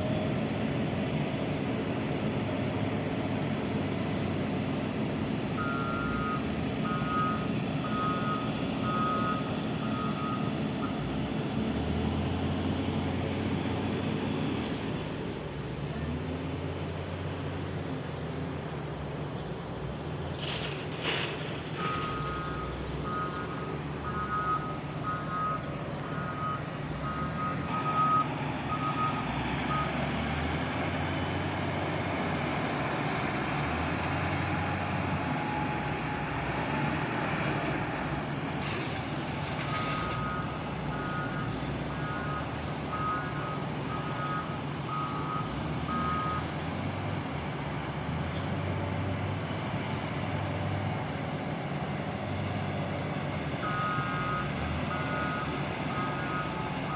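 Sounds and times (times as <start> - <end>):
diesel engine running: 0.0 - 56.9
reversing alarm beeping: 5.6 - 11.2, 21.8 - 30.8, 31.6 - 46.5, 53.6 - 56.9.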